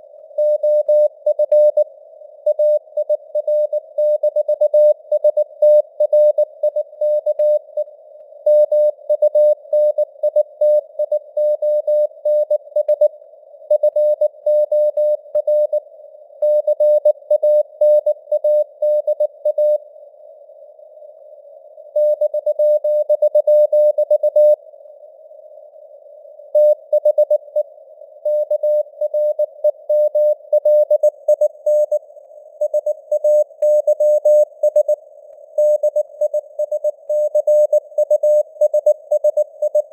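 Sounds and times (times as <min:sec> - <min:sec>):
morse code beeps: 0:28.3 - 0:32.0, 0:32.6 - 0:35.0, 0:35.6 - 0:39.9.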